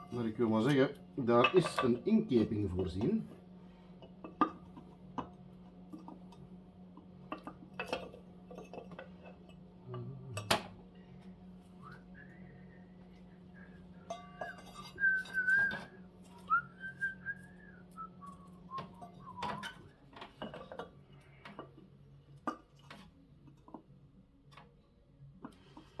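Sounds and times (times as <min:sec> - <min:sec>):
faint low hum: 0:00.0 - 0:25.8
person whistling a tune: 0:11.8 - 0:12.9, 0:14.4 - 0:19.7.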